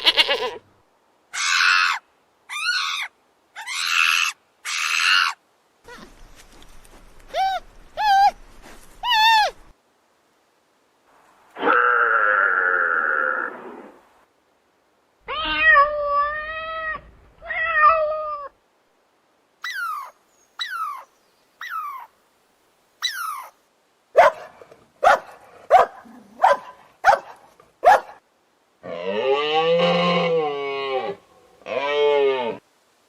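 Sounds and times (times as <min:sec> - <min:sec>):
cats meowing: 0:15.3 - 0:18.4.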